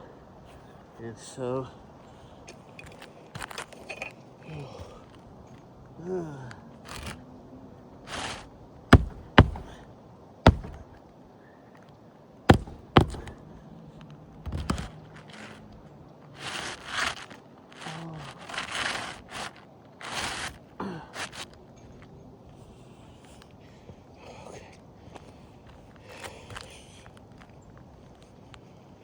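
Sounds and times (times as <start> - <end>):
shingles scraping and rustling: 8.1 - 8.4, 9.0 - 9.8, 10.5 - 10.8, 12.5 - 13.4, 16.4 - 21.5
hammer strikes on roof: 9.0 - 9.8, 10.5 - 10.8, 12.5 - 13.4.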